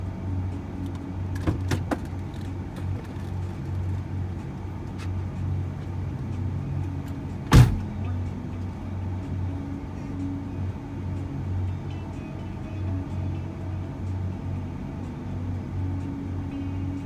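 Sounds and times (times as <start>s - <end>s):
van engine humming: 0.0s - 17.0s
loud thump: 7.5s - 8.0s.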